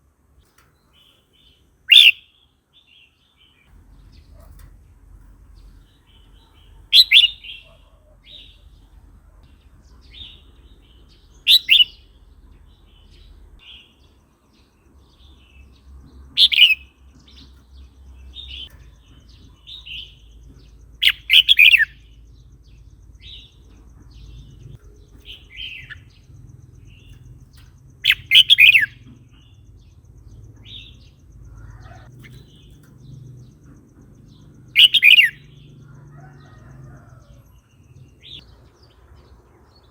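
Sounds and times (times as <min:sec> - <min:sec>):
soft bird chirps: 0:00.3 - 0:39.9
bulbul singing: 0:00.4 - 0:39.9.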